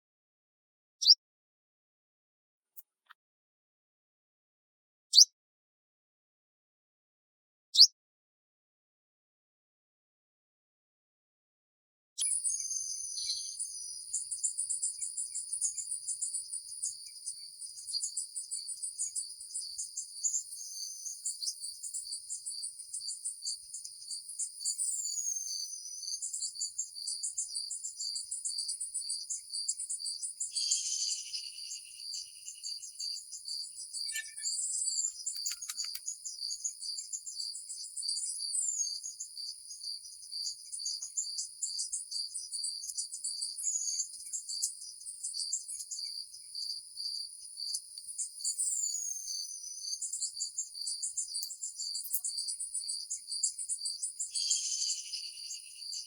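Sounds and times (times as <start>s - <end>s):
crickets and insects chirping: 12.4s - 56.0s.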